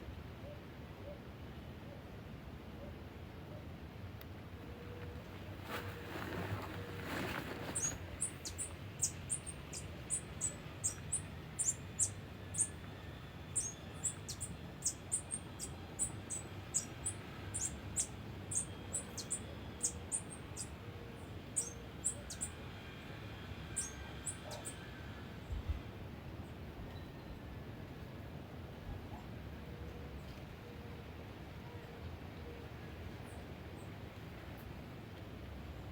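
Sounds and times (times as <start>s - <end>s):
brief rustle: 5.0s - 8.1s.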